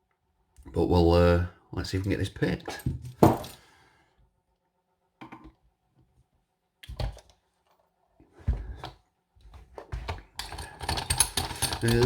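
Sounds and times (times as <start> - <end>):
padlock and tools clattering: 2.7 - 3.6, 10.4 - 12.0.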